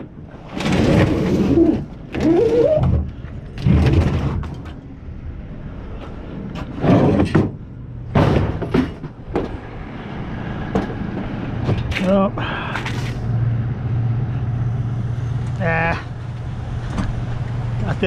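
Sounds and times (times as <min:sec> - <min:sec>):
scrap metal clanking and crashing: 0:00.4 - 0:04.8, 0:06.5 - 0:09.6.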